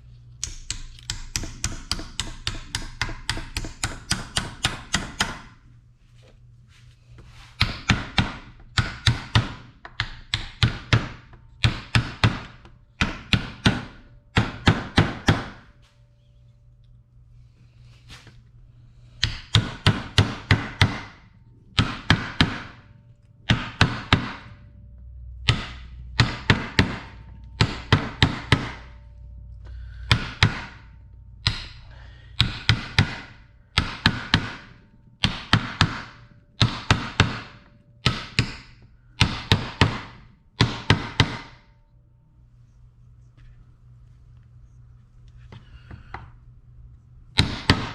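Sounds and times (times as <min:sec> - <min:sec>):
hammer blows: 0:23.5 - 0:41.7.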